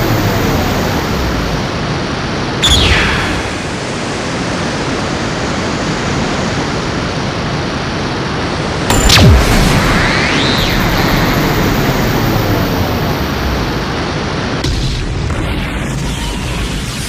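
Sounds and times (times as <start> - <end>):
sudden hit: 8.9 - 13.8.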